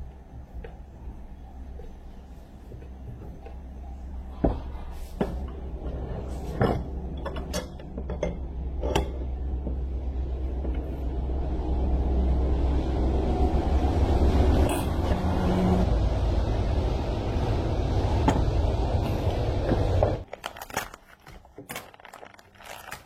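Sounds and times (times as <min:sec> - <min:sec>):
low rumble: 0:05.5 - 0:20.3.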